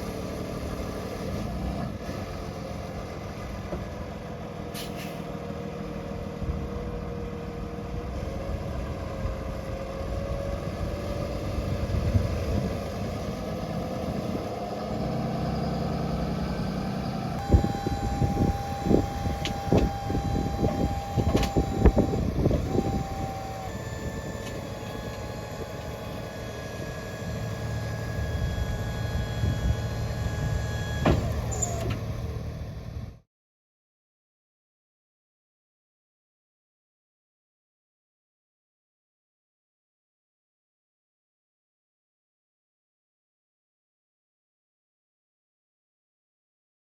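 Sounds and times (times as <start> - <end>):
truck engine rumbling: 0.0 - 33.2
steady high tone: 17.4 - 30.6.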